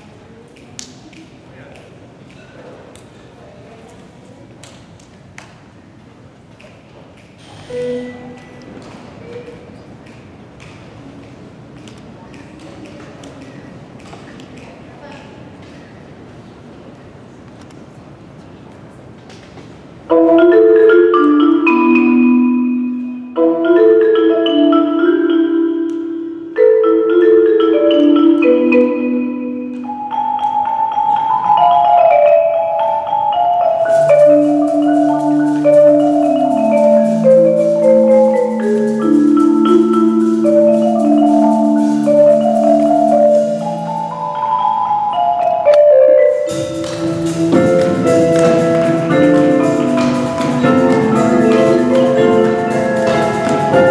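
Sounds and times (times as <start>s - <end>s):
percussion ensemble playing: 7.5s - 15.3s, 20.1s - 53.9s
marimba melody: 7.7s - 9.5s, 20.1s - 53.9s.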